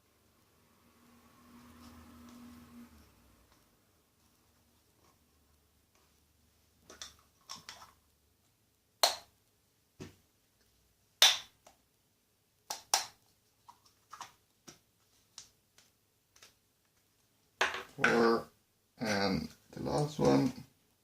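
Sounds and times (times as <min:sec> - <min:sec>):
containers clicking and tapping: 0:06.9 - 0:08.0.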